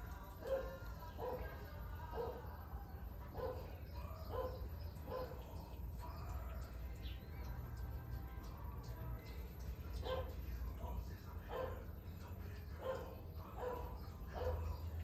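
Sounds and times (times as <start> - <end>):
washing machine draining: 0.0 - 15.0
dog barking: 0.4 - 2.5, 3.3 - 5.4, 10.0 - 10.4, 11.4 - 11.9, 12.8 - 14.9.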